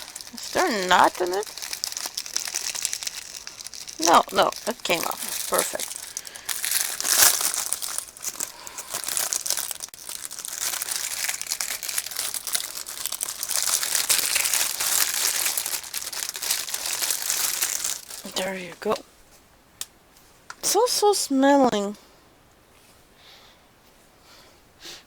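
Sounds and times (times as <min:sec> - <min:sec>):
packaging crinkling and rustling: 0:00.0 - 0:19.0.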